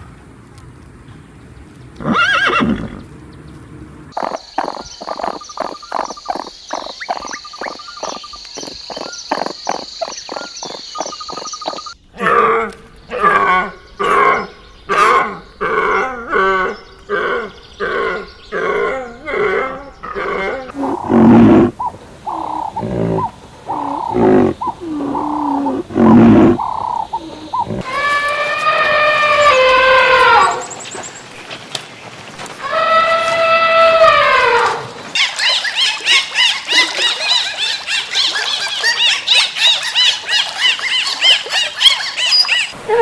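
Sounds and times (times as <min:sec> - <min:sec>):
short pulsing animal calls: 0:04.2 - 0:12.0, 0:17.4 - 0:28.2
low loud animal calls: 0:04.2 - 0:30.7
pitched animal calls: 0:04.2 - 0:30.7, 0:32.6 - 0:43.0.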